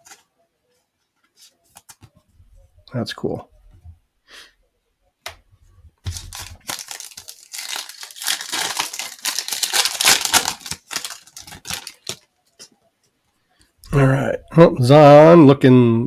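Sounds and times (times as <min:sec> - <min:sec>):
wrapper tearing and crinkling: 0:06.1 - 0:12.3.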